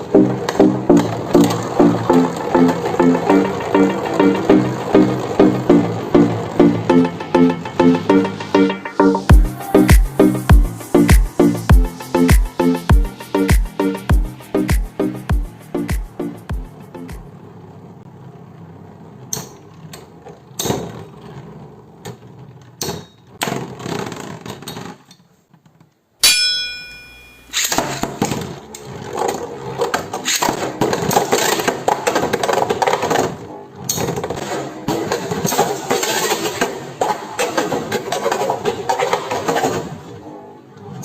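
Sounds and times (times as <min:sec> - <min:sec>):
sharp metallic ding: 0:26.2 - 0:27.7.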